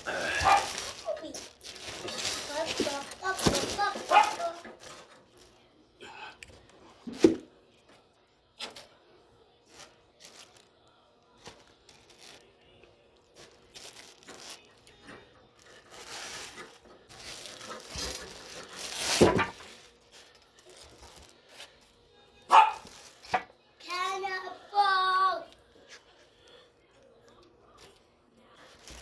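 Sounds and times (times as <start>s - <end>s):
packaging tearing and crinkling: 0.0s - 5.6s, 13.3s - 21.8s.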